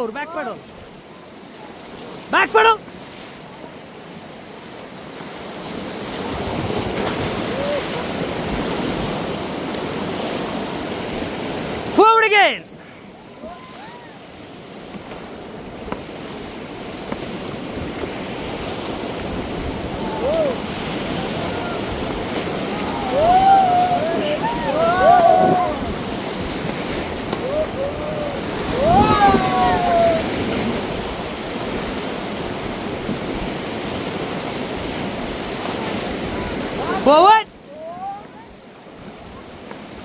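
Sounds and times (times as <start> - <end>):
whitewater river rushing: 0.0 - 40.0.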